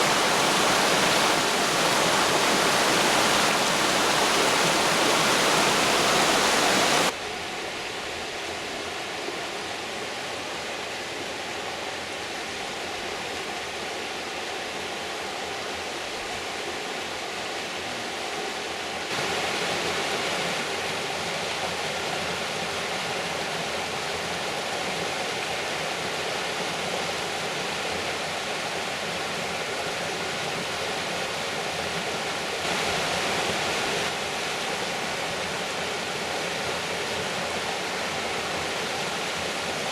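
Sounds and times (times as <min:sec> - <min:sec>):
water rushing over rocks: 0:00.0 - 0:07.2, 0:24.9 - 0:39.9.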